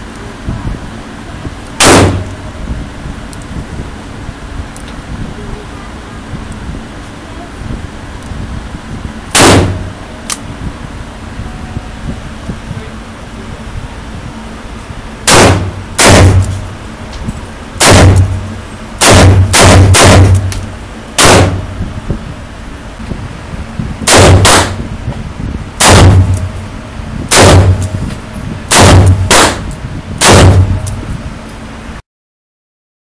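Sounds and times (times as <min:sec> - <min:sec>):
handgun shots with echo: 0:01.8 - 0:02.4, 0:09.3 - 0:09.9, 0:15.3 - 0:16.7, 0:17.8 - 0:18.4, 0:19.0 - 0:20.6, 0:21.2 - 0:21.6, 0:24.1 - 0:24.8, 0:25.8 - 0:26.5, 0:27.3 - 0:27.9, 0:28.7 - 0:31.0.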